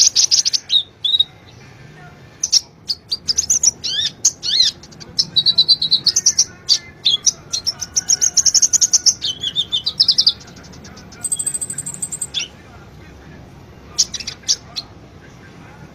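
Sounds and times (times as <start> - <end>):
bird singing high trills: 11.2 - 12.6.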